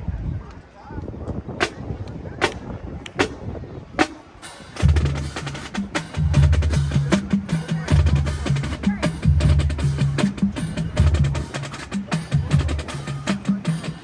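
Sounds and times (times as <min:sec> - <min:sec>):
pitched bass drums: 0:04.0 - 0:14.0
snare drum rapid strokes: 0:04.0 - 0:14.0.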